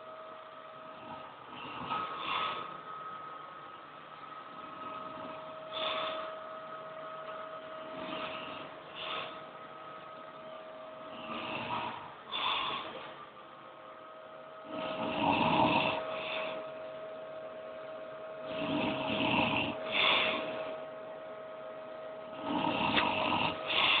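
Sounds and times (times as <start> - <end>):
person snoring: 0.9 - 2.8, 4.5 - 6.2, 7.8 - 9.4, 11.1 - 13.0, 14.7 - 16.6, 18.4 - 20.6, 22.3 - 24.0.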